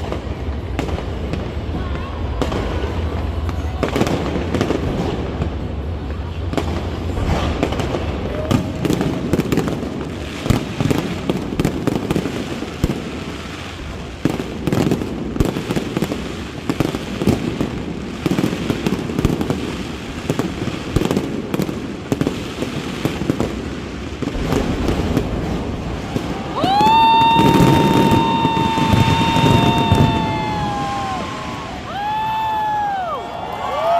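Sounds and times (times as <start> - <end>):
continuous rumble: 0.0 - 22.2
fireworks bangs and crackles: 0.0 - 33.9.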